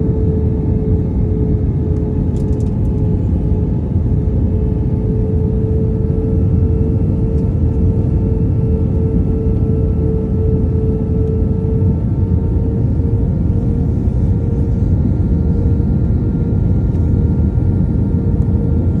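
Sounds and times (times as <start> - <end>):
airplane engines droning: 0.0 - 19.0.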